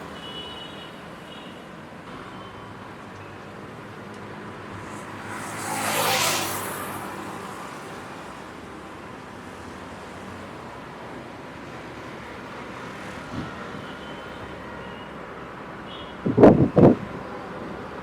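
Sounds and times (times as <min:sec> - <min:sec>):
background highway traffic: 0:00.0 - 0:18.0
vehicle passing close by: 0:04.2 - 0:09.6.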